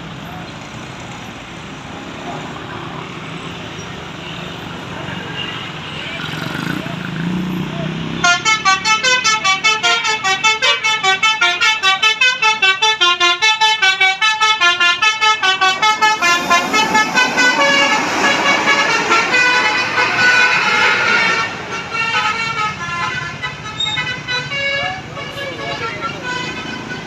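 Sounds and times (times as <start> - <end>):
musical air horn playing a tune: 8.2 - 27.0.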